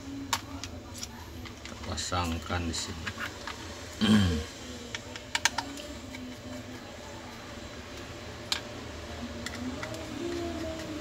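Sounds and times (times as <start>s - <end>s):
hardware clicks and taps: 4.9s - 6.4s.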